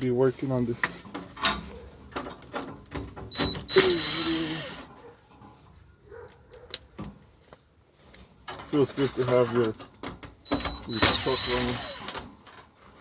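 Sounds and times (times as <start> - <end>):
high ringing tone: 10.5 - 11.4
hand tool scraping metal: 10.5 - 12.5.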